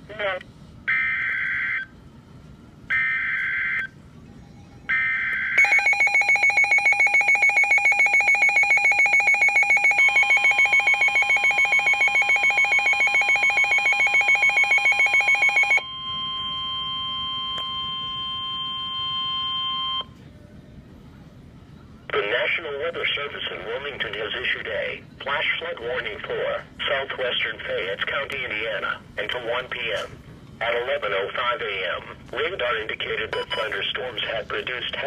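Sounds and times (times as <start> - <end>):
rapidly pulsing alarm: 0.9 - 1.9, 2.9 - 3.9, 4.9 - 20.1
steady warning tone: 2.9 - 20.2.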